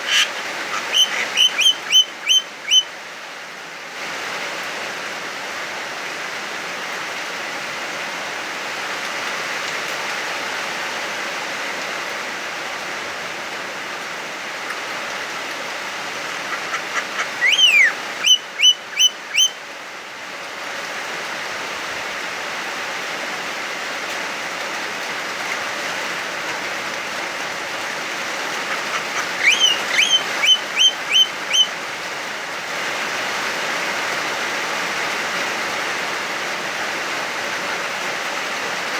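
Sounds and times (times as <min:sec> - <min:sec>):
myna whistled calls: 0:00.0 - 0:02.9, 0:16.3 - 0:19.6, 0:28.6 - 0:31.8
heavy rain hiss: 0:00.0 - 0:38.9.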